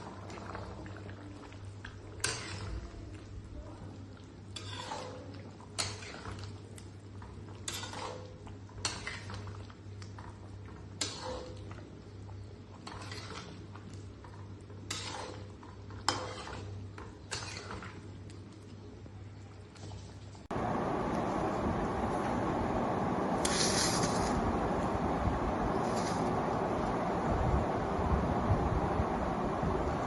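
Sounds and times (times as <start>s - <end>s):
spoon scraping pot: 4.5s - 6.5s, 7.6s - 9.5s, 11.0s - 11.8s, 12.7s - 13.7s, 14.8s - 18.0s.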